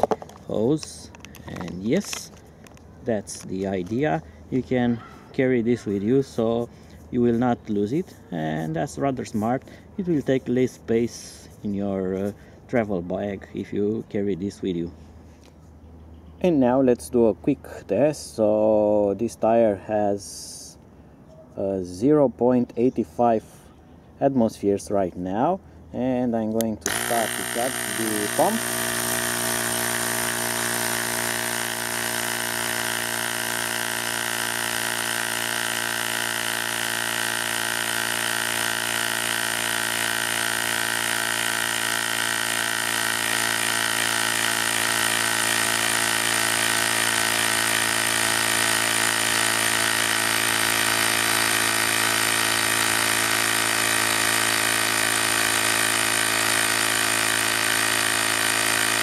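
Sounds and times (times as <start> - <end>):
tire inflator compressor running: 0.0 - 14.0, 26.6 - 59.0.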